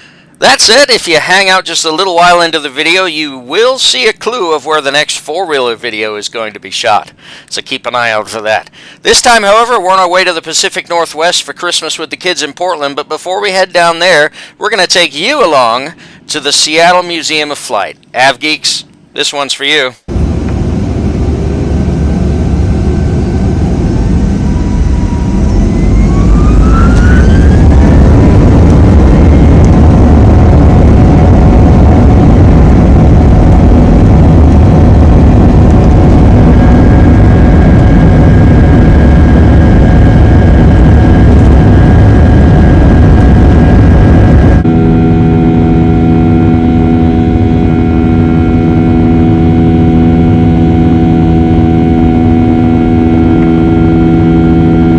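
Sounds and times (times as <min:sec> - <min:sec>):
jet engines spooling up: 0:20.1 - 0:54.9.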